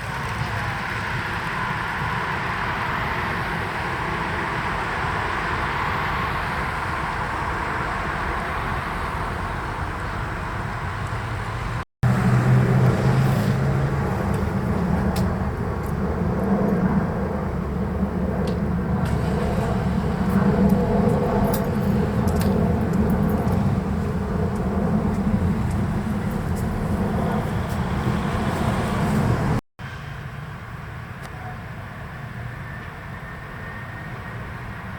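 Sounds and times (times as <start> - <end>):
vehicle engine rumble: 0.0 - 34.9
low hum: 12.0 - 31.3.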